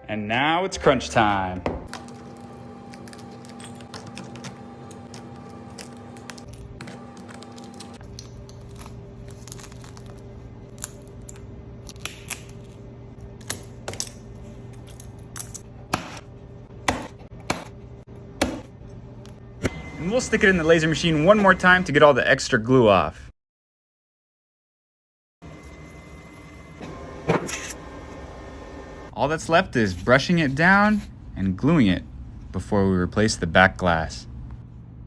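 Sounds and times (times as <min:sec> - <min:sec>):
background hum: 0:01.6 - 0:19.6.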